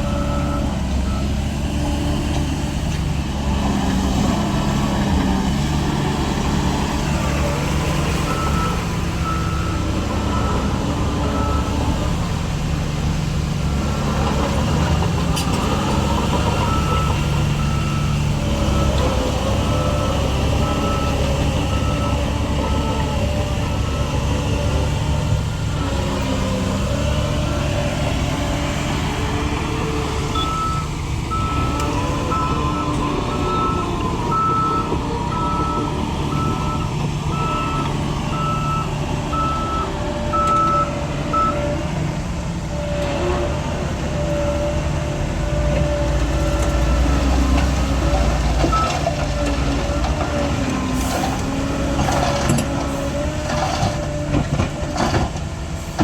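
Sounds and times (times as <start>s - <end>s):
heavy machinery diesel engines: 0.0s - 56.0s
reversing alarm beeping: 7.2s - 12.0s, 19.6s - 24.7s, 30.3s - 41.6s.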